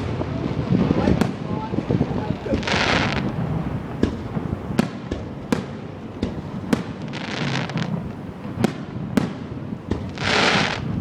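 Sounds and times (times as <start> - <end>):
firework hissing crackle: 0.0 - 11.0
firework shells banging: 0.7 - 11.0.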